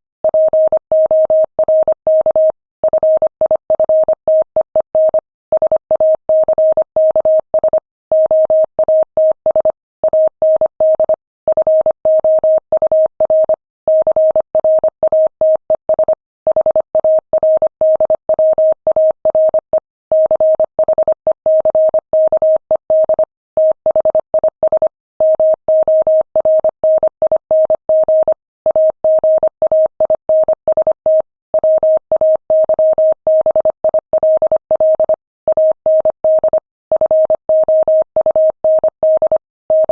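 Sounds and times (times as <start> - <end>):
morse code tone: 27.6 - 39.9.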